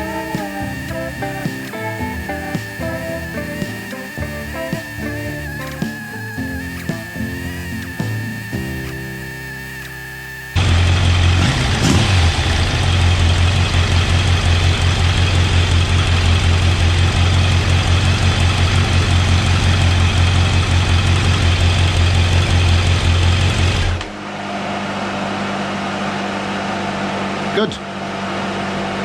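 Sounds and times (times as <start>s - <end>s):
motorcycle engine idling: 10.6s - 24.0s.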